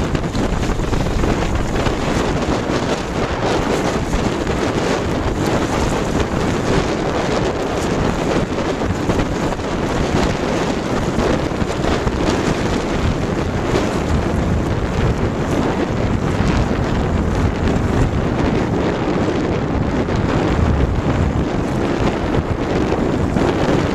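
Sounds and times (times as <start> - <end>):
water rushing past hull: 0.0 - 23.9
wind buffeting microphone: 0.0 - 23.9.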